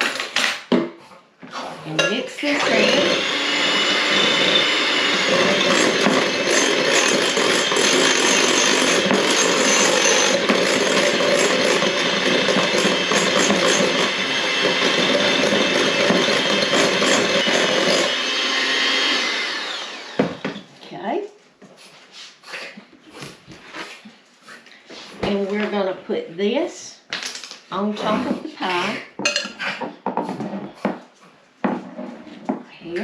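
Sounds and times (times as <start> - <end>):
electric mixer whipping cream: 2.4 - 20.6.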